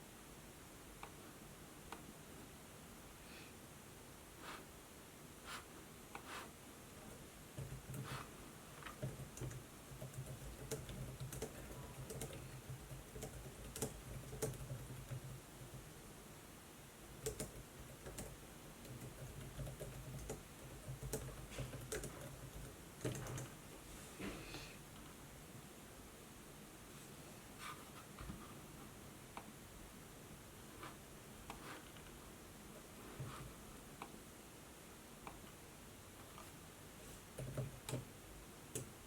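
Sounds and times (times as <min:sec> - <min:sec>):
typing on laptop keyboard: 0:07.6 - 0:08.2, 0:08.8 - 0:15.8, 0:17.2 - 0:23.5, 0:37.3 - 0:38.1.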